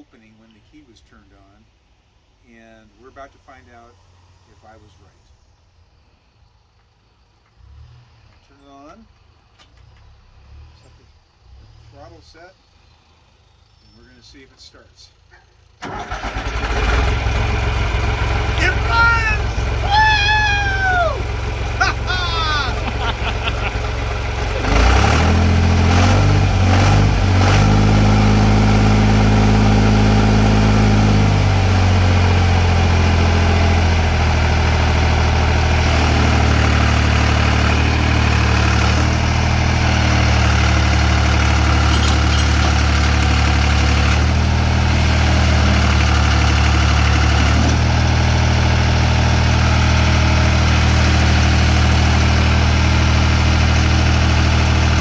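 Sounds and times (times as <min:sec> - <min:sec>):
diesel engine starting and idling: 0:15.6 - 0:55.0.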